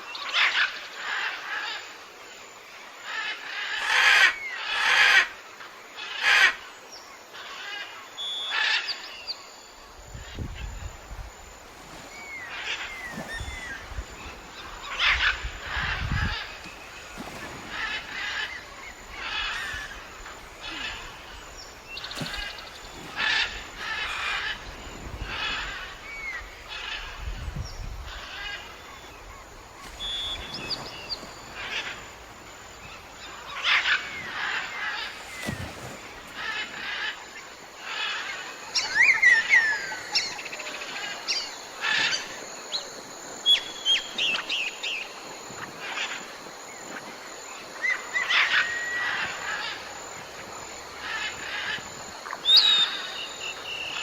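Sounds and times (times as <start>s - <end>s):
bird call: 11.8s - 27.1s, 28.5s - 37.2s, 52.4s - 54.0s.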